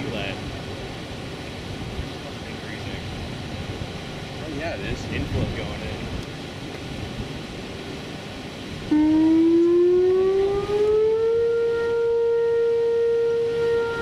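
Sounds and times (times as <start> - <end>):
tornado warning siren wailing: 8.8 - 14.0.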